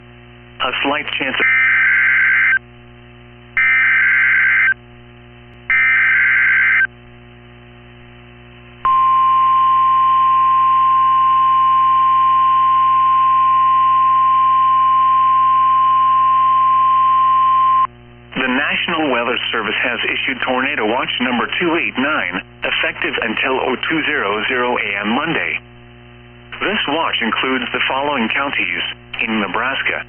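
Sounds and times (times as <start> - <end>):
steady warning alarm tone: 1.4 - 2.6, 3.6 - 4.8, 5.7 - 6.9.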